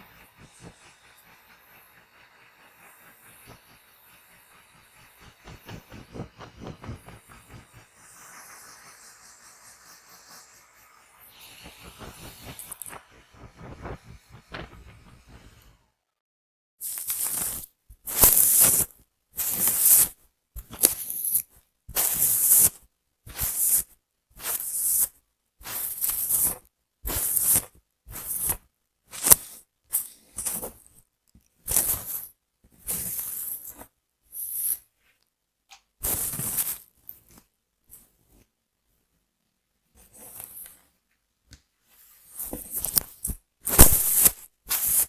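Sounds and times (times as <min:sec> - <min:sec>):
rustling strokes through hair: 0:00.0 - 0:15.9, 0:41.9 - 0:45.0.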